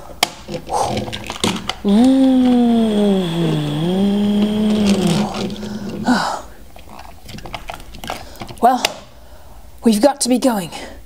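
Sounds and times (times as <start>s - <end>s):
woman humming engine noise: 1.8s - 5.5s
short vocal sound: 1.8s - 6.4s.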